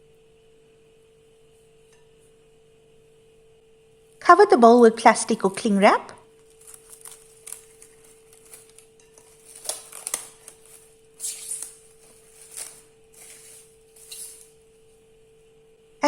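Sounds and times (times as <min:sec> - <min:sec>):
cling wrap crinkling: 0:06.3 - 0:14.8.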